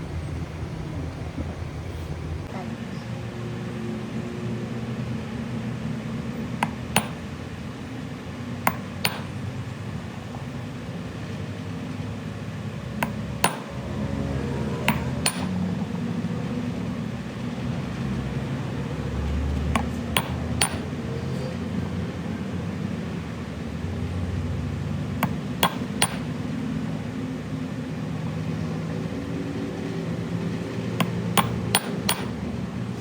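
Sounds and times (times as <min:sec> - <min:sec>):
hammer striking metal: 0:06.6 - 0:07.4, 0:08.7 - 0:09.5, 0:13.0 - 0:15.8, 0:19.8 - 0:21.0, 0:25.2 - 0:26.4, 0:31.0 - 0:32.4.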